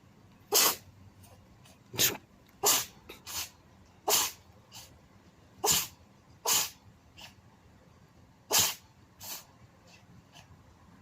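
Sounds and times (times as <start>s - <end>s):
cat sneezing: 0.5s - 0.9s, 1.9s - 4.9s, 5.6s - 7.4s, 8.4s - 9.5s.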